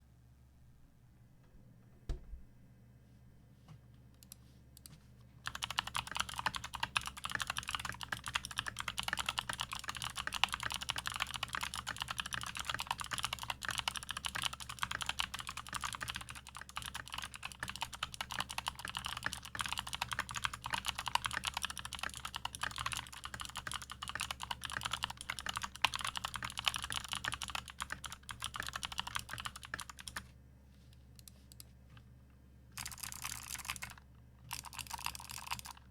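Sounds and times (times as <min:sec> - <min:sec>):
fast mechanical keyboard typing: 0:05.4 - 0:30.2, 0:32.8 - 0:35.9.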